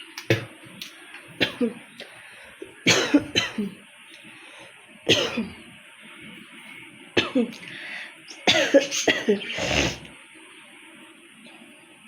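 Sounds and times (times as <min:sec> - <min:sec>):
woman coughing: 0:01.4 - 0:01.8, 0:02.8 - 0:03.8, 0:05.1 - 0:05.6, 0:07.2 - 0:07.6, 0:08.4 - 0:10.1.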